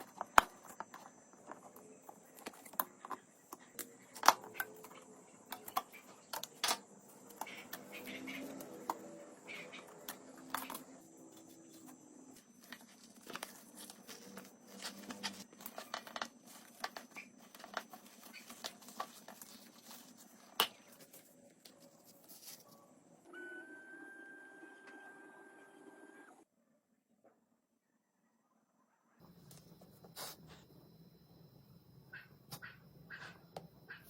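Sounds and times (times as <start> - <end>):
steady whine: 0.0 - 23.2.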